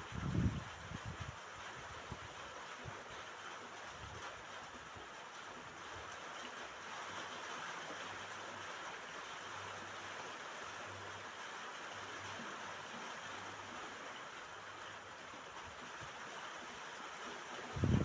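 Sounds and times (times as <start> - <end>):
rain falling on a roof: 0.0 - 18.0.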